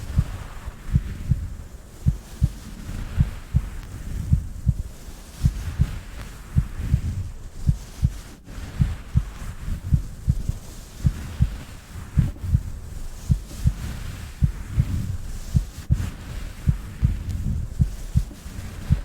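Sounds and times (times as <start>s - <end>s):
heartbeat: 0.0s - 19.0s.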